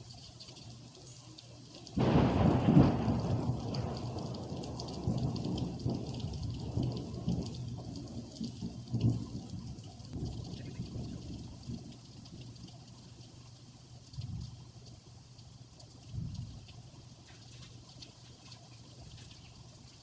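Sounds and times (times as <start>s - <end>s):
steady rain: 0.0s - 20.0s
thunder rumbling: 2.0s - 11.9s.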